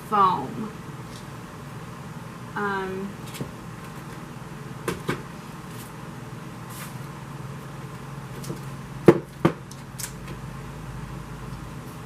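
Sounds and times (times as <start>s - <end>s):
steady low hum: 0.0s - 12.0s.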